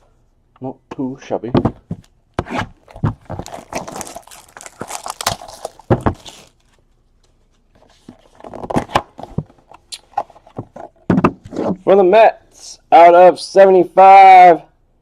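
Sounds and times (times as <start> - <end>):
wrapper tearing and crinkling: 3.2 - 6.8.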